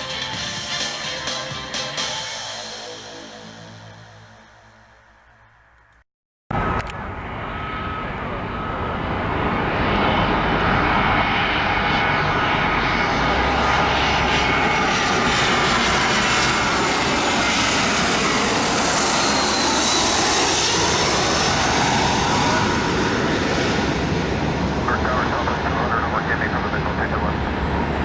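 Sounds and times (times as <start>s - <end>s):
jet engine rumble and hiss: 6.6s - 28.0s.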